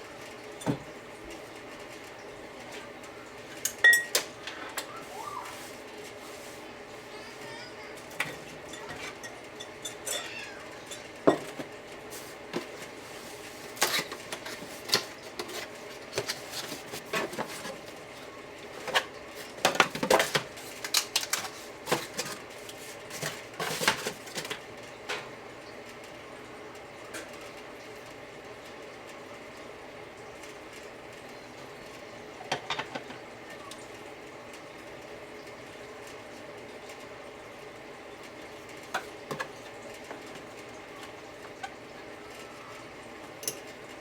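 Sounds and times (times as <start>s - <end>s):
metal kitchen parts and dishes clinking: 3.6s - 4.8s, 8.0s - 13.0s, 13.6s - 17.9s, 18.7s - 25.3s, 38.9s - 40.4s, 43.4s - 43.8s.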